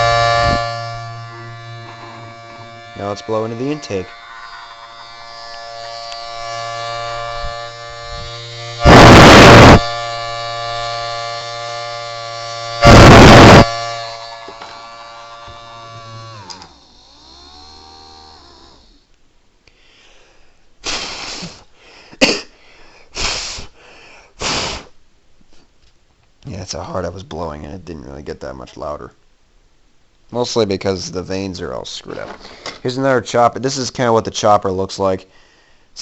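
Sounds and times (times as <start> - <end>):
rushing blasts of blowing: 0.0 - 3.8, 6.4 - 11.0, 12.8 - 14.0, 20.8 - 21.7, 23.1 - 23.8, 24.4 - 25.0
siren whine: 0.0 - 4.2, 5.8 - 11.5, 12.1 - 14.4
short bursts of noise: 0.0 - 11.5, 12.4 - 14.6, 24.4 - 25.0
motor hum: 0.0 - 19.2.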